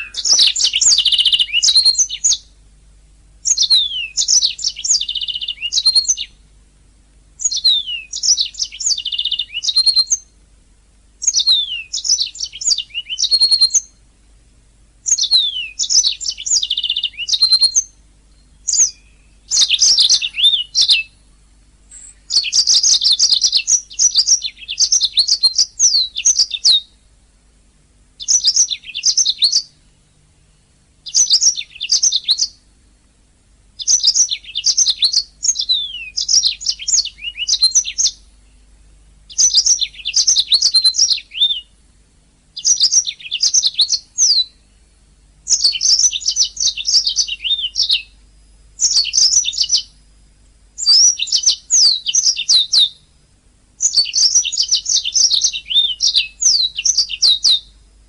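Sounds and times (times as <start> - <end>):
canary singing: 0.0 - 2.6, 3.4 - 6.4, 7.4 - 10.4, 11.2 - 14.0, 15.0 - 27.1, 28.2 - 30.3, 31.0 - 32.6, 33.8 - 38.7, 39.3 - 41.8, 42.6 - 50.0, 50.8 - 53.2, 53.8 - 57.8.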